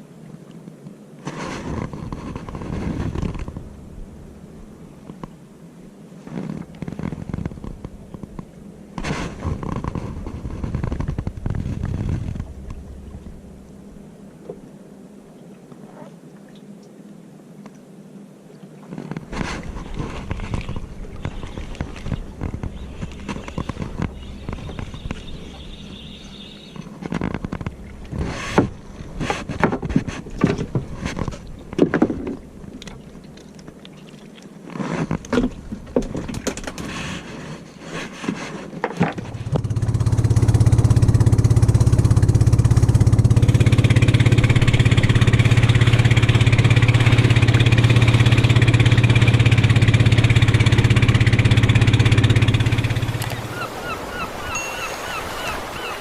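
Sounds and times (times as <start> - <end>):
knocks and clatter of gear: 34.8 - 37.0
engine idling: 39.4 - 53.3.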